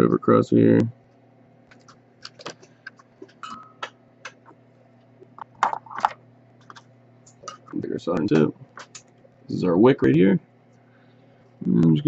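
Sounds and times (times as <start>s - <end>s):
low electrical hum: 0.0s - 12.0s
small tools clicking and tapping: 6.6s - 9.2s.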